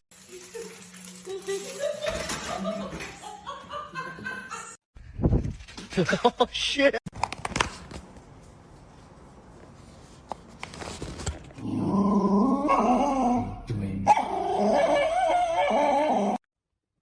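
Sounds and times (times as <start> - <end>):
dog whining and grumbling: 11.6 - 16.4.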